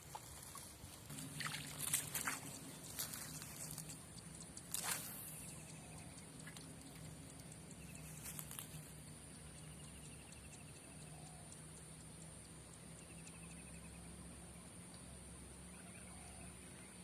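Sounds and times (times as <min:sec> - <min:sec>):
insects humming: 0:00.0 - 0:17.0
insect pulsing trills: 0:01.1 - 0:14.6
faint clicks: 0:01.9 - 0:13.9.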